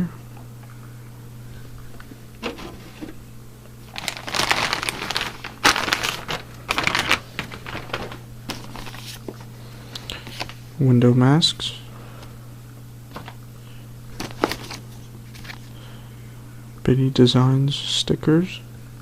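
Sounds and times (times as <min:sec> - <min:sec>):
low electrical hum: 0:00.0 - 0:19.0
plastic packaging crinkling: 0:03.8 - 0:09.4, 0:14.1 - 0:15.7.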